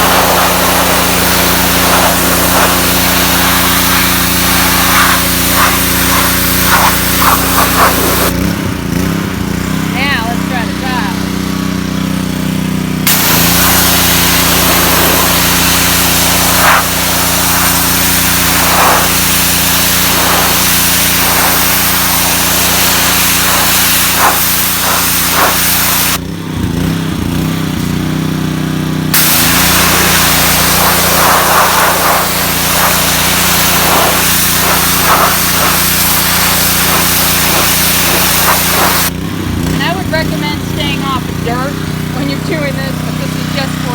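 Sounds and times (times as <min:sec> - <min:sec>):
high-pressure water spray hiss: 0:00.0 - 0:08.3, 0:13.1 - 0:26.2, 0:29.2 - 0:39.1
pressure washer engine running: 0:00.0 - 0:43.9.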